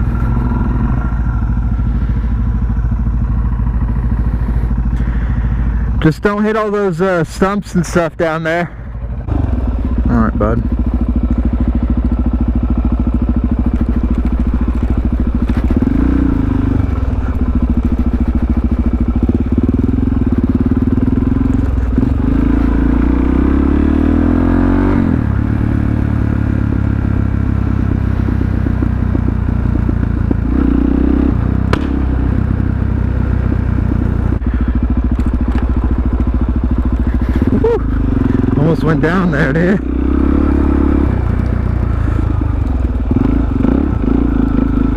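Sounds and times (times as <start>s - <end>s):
motorcycle engine revving: 0.0s - 44.9s
second motorcycle engine: 0.0s - 44.9s.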